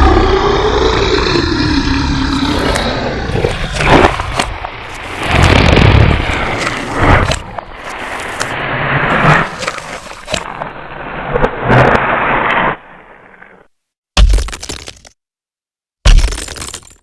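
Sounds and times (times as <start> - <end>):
monster growl: 0.0 - 4.5.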